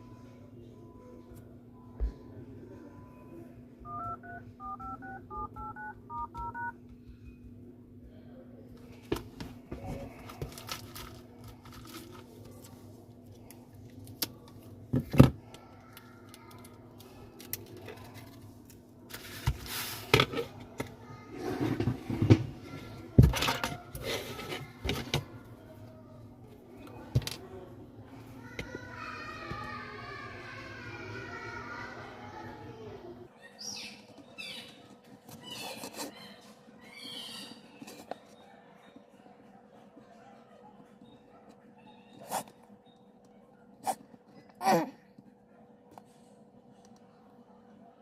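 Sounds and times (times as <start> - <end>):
phone keypad two-tone beeps: 3.8 - 6.7.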